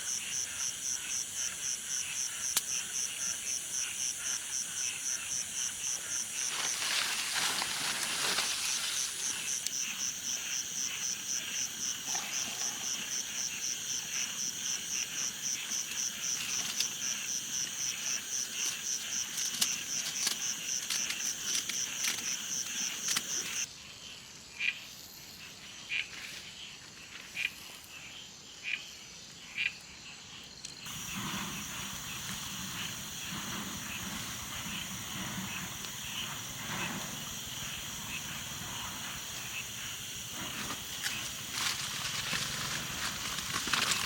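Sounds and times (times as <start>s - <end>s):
steady hiss: 0.0s - 12.0s, 30.9s - 44.0s
insects trilling: 0.0s - 23.8s, 24.6s - 44.0s.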